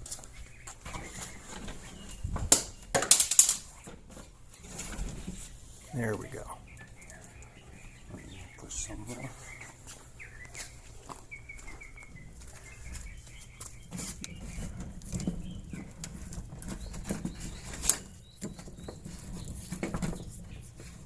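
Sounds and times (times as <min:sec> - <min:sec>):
cable rustling and scraping: 0:00.0 - 0:05.8, 0:12.3 - 0:21.0
faint bird chirps: 0:05.7 - 0:19.8.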